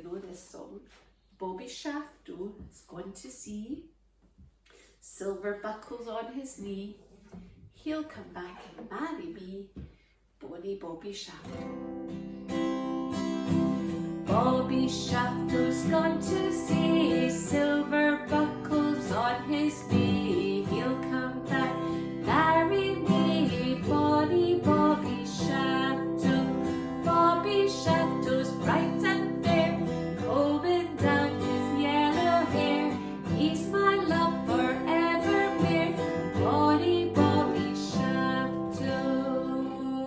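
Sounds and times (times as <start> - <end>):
strummed acoustic guitar: 11.5 - 40.0
woman singing: 14.2 - 40.0.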